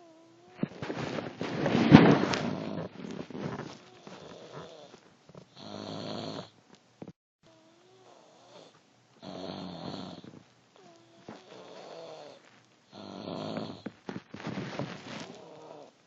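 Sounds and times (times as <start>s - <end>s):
person snoring: 2.4s - 6.5s, 7.5s - 14.0s, 15.0s - 16.0s.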